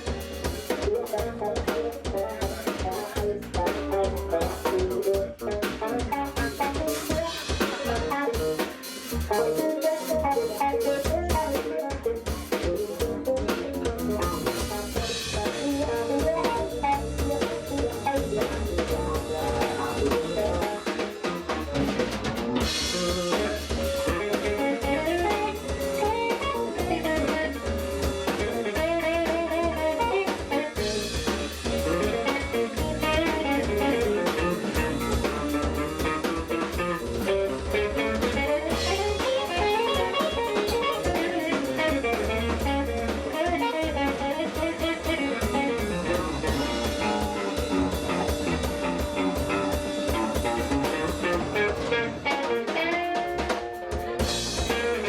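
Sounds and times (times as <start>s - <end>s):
low bass line: 0.0s - 8.1s, 13.0s - 30.2s, 30.8s - 39.2s, 43.9s - 52.2s
drum kit: 0.0s - 55.0s
guitar: 0.0s - 55.0s.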